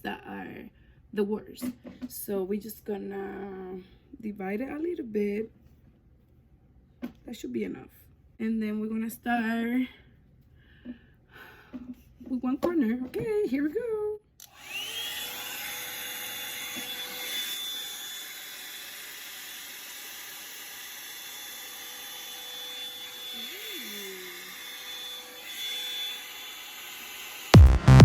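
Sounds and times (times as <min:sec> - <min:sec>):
hair dryer motor whining: 0:14.4 - 0:28.0.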